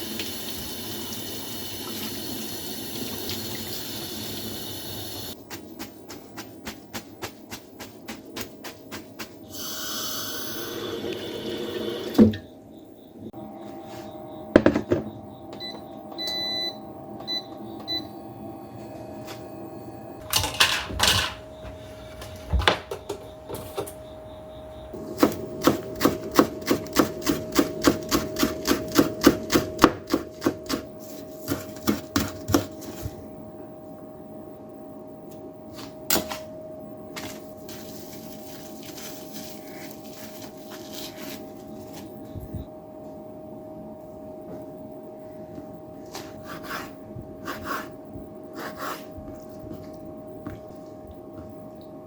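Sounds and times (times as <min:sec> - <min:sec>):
kitchen clicks and knocks: 0:20.2 - 0:21.5, 0:22.4 - 0:24.0.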